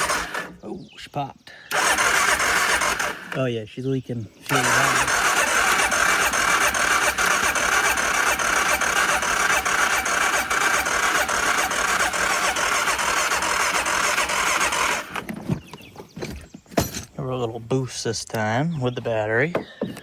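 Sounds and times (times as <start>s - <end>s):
engine cranking on starter: 0.0s - 0.7s, 1.7s - 3.5s, 4.4s - 15.8s.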